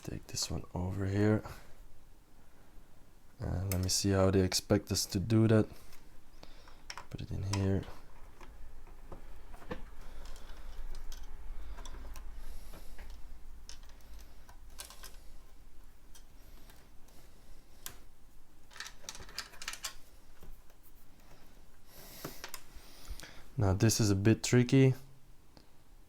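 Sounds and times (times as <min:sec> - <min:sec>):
faint low hum: 0:00.0 - 0:26.0
plastic bricks clicking together: 0:18.6 - 0:20.0.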